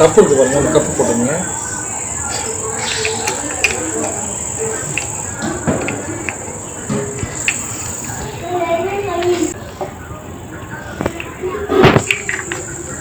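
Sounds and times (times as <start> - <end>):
steady high-pitched whine: 0.0 - 13.0
plastic parts clicking and knocking: 11.8 - 12.8.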